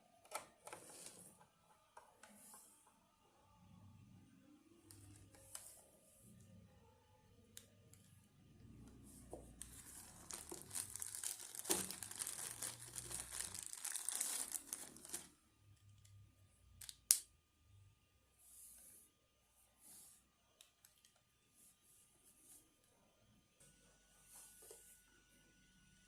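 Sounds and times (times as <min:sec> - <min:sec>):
packaging crinkled and torn: 0:09.6 - 0:15.3.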